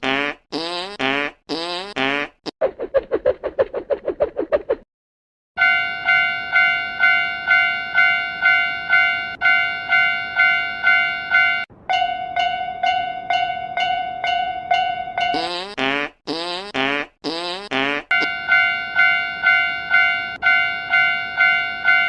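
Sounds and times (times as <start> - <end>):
level crossing bell ringing: 5.6 - 15.4, 18.1 - 22.0.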